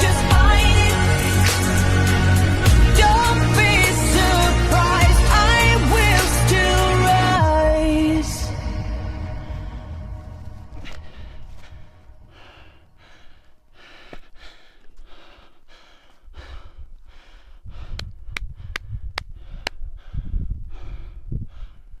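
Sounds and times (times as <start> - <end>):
low rumble on microphone: 0.0 - 13.3
person panting: 9.3 - 22.0.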